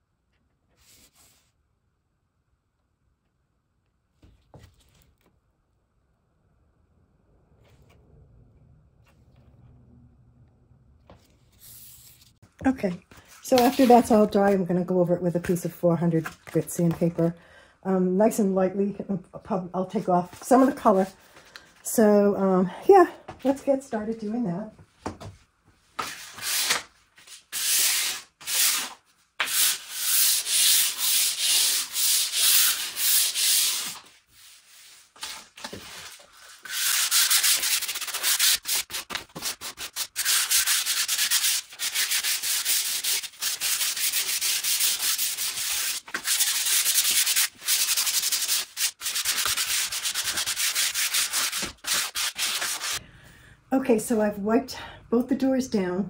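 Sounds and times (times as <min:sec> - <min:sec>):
sandpaper rasping on wood: 0:27.5 - 0:34.9, 0:36.5 - 0:53.0.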